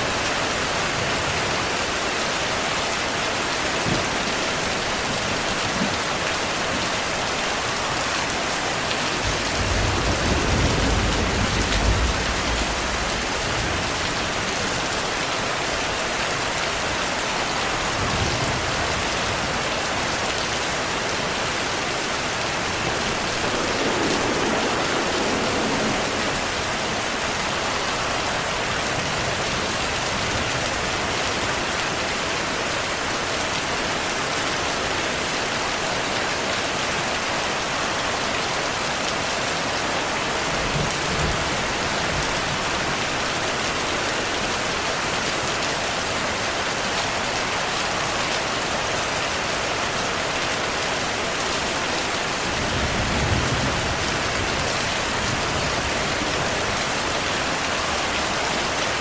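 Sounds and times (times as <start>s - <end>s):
heavy rain hissing: 0.0s - 59.0s
low rumble of thunder: 9.1s - 15.0s, 21.6s - 30.6s, 52.5s - 58.4s.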